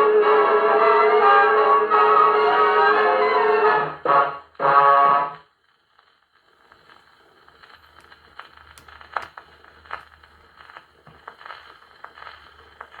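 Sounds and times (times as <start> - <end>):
record surface crackle: 5.6 - 13.0
gramophone needle clicks: 7.7 - 10.2.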